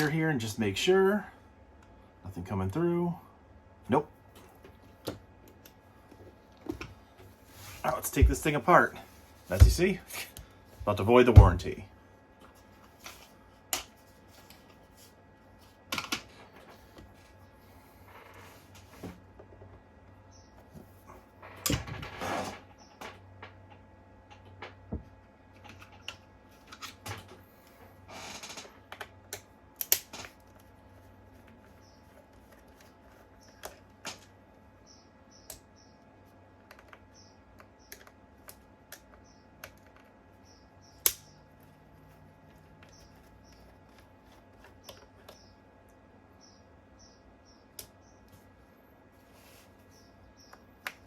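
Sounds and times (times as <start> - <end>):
hand tools tapping and scraping: 9.5 - 11.7.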